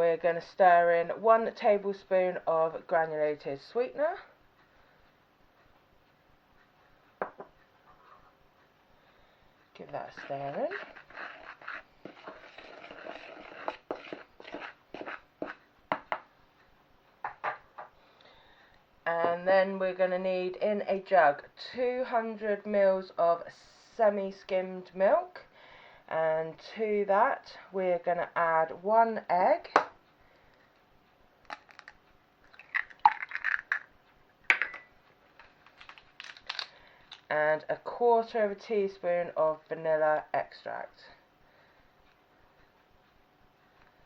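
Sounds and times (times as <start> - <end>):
egg tapped against jug: 7.2 - 7.6, 15.9 - 16.3
eggshell crackling: 9.8 - 15.7, 31.4 - 37.3
stirring dry ingredients in bowl: 9.8 - 16.2.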